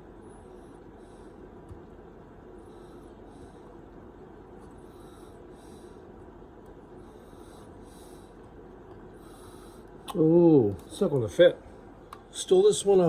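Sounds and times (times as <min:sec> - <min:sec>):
faint steady hum: 0:00.0 - 0:13.0
person breathing slowly: 0:02.6 - 0:03.8, 0:04.7 - 0:06.1, 0:06.9 - 0:08.5, 0:09.2 - 0:10.0.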